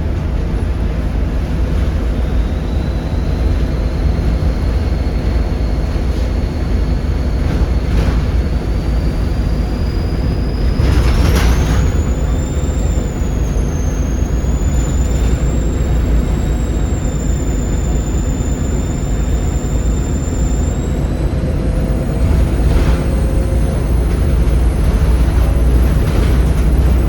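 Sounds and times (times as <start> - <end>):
diesel bus engine pulling hard: 0.0 - 27.0
turbocharger whistle: 2.0 - 27.0.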